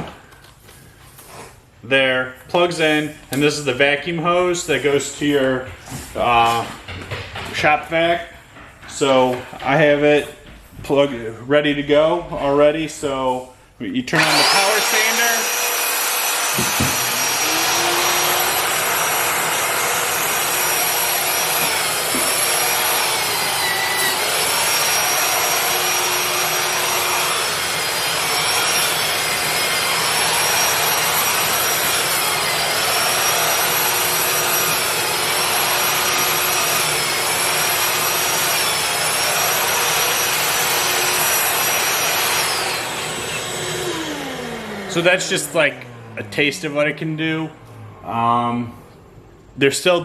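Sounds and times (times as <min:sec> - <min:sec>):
power drywall sander whining: 0:14.1 - 0:49.1.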